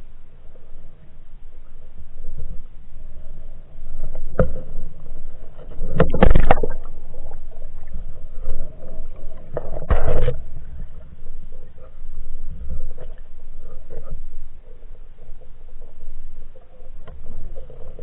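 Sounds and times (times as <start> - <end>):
muffled underwater sounds: 0.0 - 18.0.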